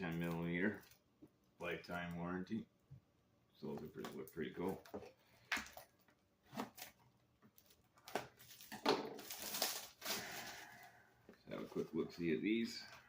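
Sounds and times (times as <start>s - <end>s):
packaging rustling: 7.6s - 10.9s.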